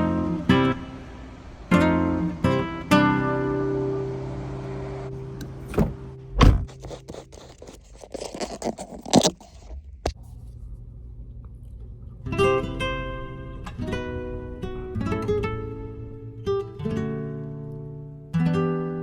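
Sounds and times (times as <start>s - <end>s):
guitar music: 0.0s - 6.4s, 12.2s - 19.0s
car engine idling: 0.8s - 6.9s
low thump: 5.6s - 6.9s.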